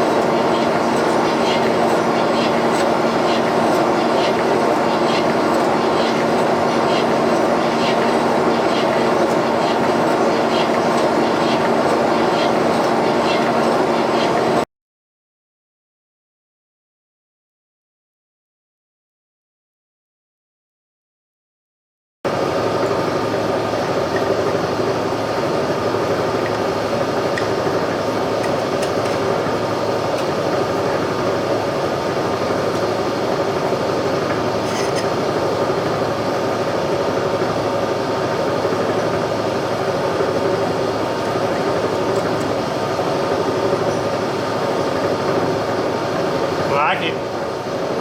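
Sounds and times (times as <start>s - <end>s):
boring machine cutting steel: 0.0s - 14.6s, 25.0s - 35.8s.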